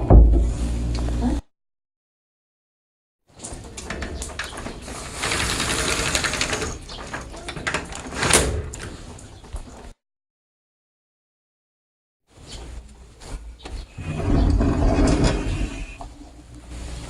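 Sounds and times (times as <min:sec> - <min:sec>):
sliding door knocking shut: 0:00.0 - 0:00.6
sliding door rolling on track: 0:03.4 - 0:09.2, 0:14.0 - 0:16.2.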